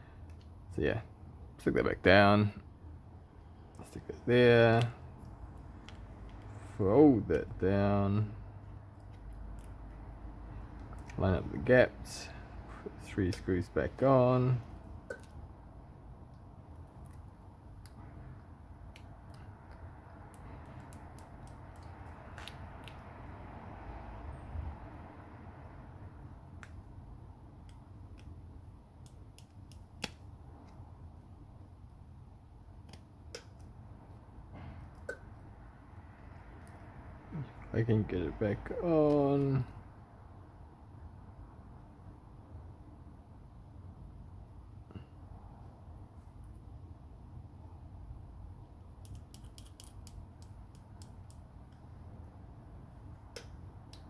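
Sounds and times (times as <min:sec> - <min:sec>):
low steady hum: 0:00.0 - 0:54.0
small tools clicking and tapping: 0:49.0 - 0:51.8.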